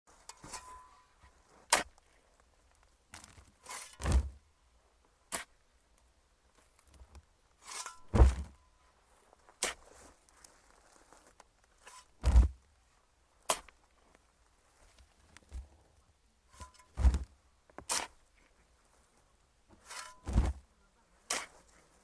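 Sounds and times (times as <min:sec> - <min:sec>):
shovel scraping dirt: 0:00.1 - 0:02.0, 0:03.2 - 0:04.4, 0:05.3 - 0:05.6, 0:07.6 - 0:08.6, 0:09.6 - 0:10.1, 0:11.8 - 0:12.6, 0:13.5 - 0:13.8, 0:16.5 - 0:18.3, 0:19.7 - 0:20.6, 0:21.2 - 0:22.0
heavy dull thuds: 0:08.1 - 0:08.6, 0:12.2 - 0:12.6, 0:20.3 - 0:20.6.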